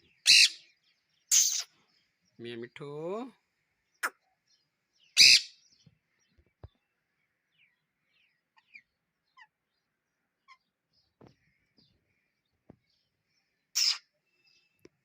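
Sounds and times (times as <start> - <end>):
parrot screeching: 0.2 - 0.6, 1.3 - 1.7, 5.2 - 5.5, 13.8 - 14.0.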